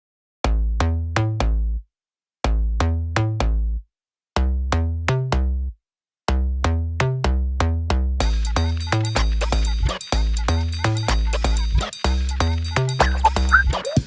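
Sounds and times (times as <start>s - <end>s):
electronic music with heavy bass: 6.7s - 14.0s.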